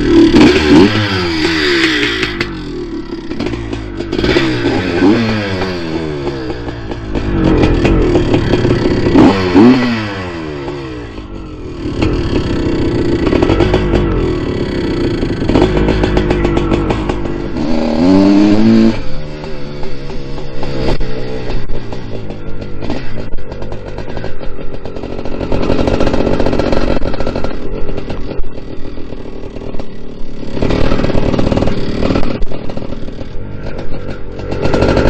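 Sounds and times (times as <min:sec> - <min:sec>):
dirt bike engine revving: 0:00.0 - 0:35.0.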